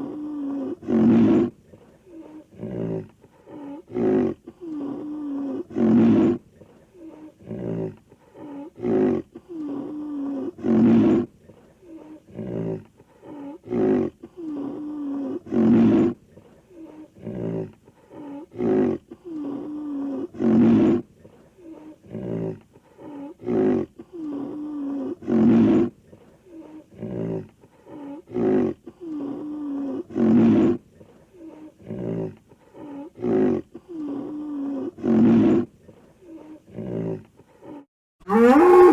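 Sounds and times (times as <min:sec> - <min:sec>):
cartoon character roar: 0:38.3 - 0:38.9.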